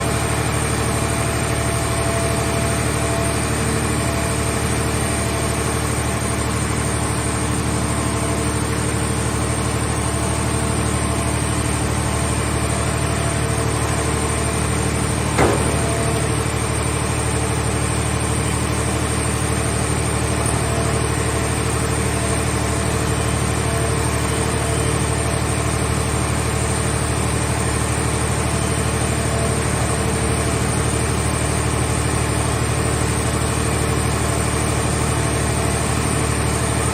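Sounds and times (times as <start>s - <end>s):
hydraulic power unit running: 0.0s - 36.9s
sharp metal clank: 15.4s - 16.4s.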